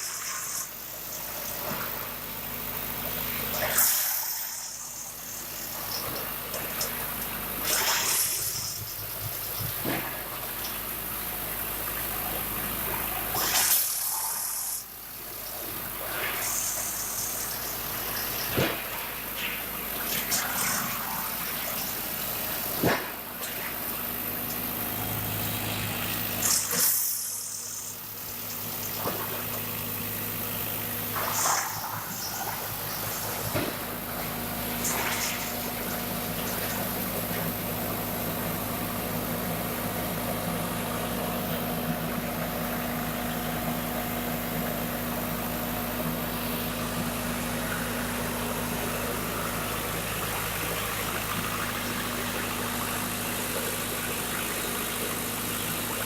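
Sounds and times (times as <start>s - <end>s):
wood chipper diesel engine: 0.8s - 4.0s, 4.6s - 14.2s, 14.9s - 56.0s.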